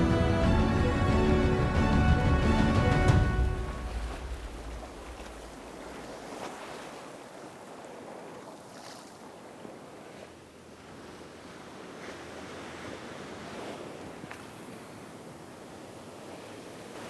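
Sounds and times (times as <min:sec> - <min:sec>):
background music: 0:00.0 - 0:06.0
ocean surf washing onto beach: 0:00.0 - 0:07.1.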